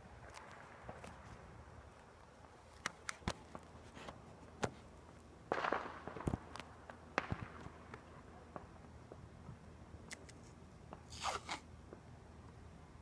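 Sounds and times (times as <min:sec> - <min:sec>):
firecrackers popping and crackling: 0:00.0 - 0:09.6.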